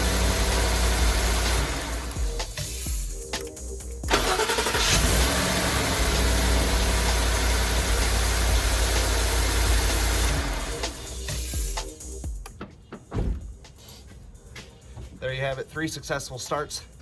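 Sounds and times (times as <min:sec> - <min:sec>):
car engine starting and running: 0:00.0 - 0:02.6, 0:03.9 - 0:11.7.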